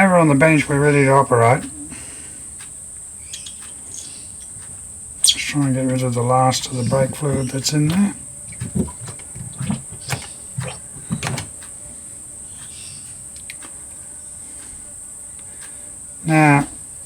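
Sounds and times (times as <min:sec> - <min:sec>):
crickets chirring: 0:00.0 - 0:17.0
light clicks and knocks: 0:02.6 - 0:11.8.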